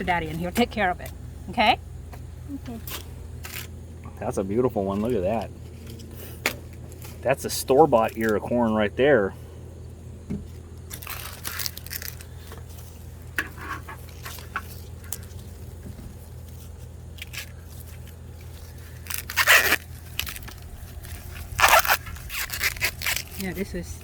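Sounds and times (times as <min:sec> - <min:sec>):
corn husks tearing and rustling: 0:02.8 - 0:08.9, 0:10.8 - 0:24.0.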